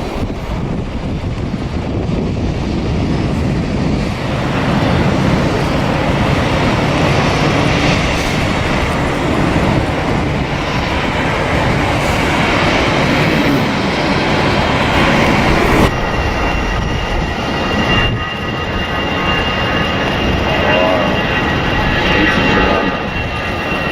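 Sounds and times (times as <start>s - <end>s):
large vehicle roaring past: 20.0s - 23.5s.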